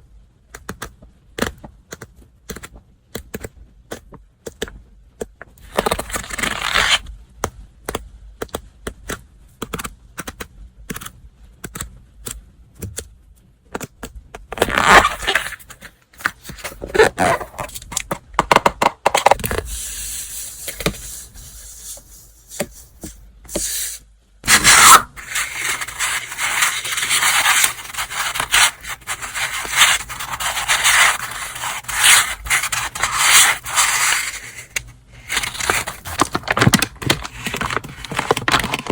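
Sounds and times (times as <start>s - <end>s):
paper and packaging rustling: 14.6s - 18.0s, 24.5s - 38.9s.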